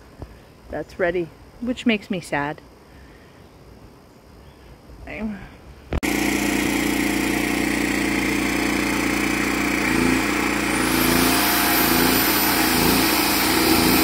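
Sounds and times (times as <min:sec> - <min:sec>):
electric tool whine: 0:06.0 - 0:14.0
generator engine running: 0:06.0 - 0:14.0.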